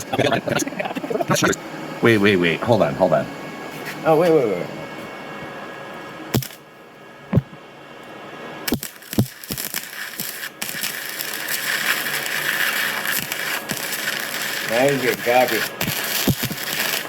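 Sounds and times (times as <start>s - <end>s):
welding arc crackling: 6.3s - 6.7s, 8.6s - 17.0s
welding arc cracks: 6.3s - 6.7s, 8.6s - 17.0s.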